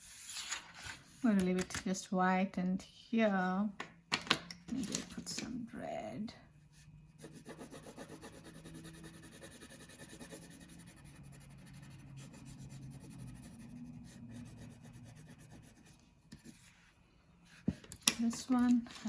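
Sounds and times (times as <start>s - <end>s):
pencil scratching on paper: 6.7s - 17.8s.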